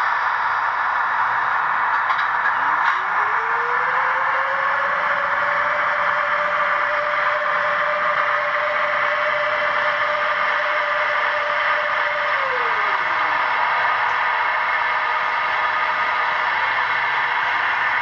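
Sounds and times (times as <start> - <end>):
hissing running noise: 0.0 - 18.0
electric motor whine: 2.6 - 18.0.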